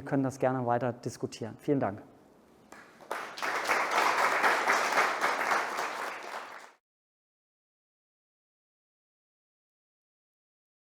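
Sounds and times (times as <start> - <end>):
audience applauding: 2.8 - 6.8.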